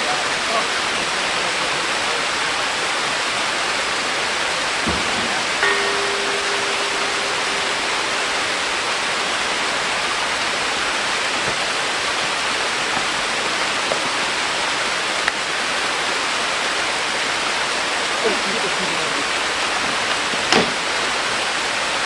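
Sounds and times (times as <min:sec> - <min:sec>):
waterfall roaring: 0:00.0 - 0:22.0
faint steady tone: 0:05.6 - 0:12.2.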